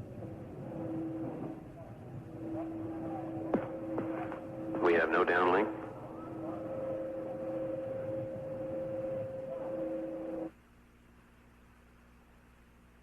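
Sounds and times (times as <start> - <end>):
steady radio tones: 0.0 - 10.5
faint low hum: 0.0 - 13.0
radio hiss: 0.2 - 10.5.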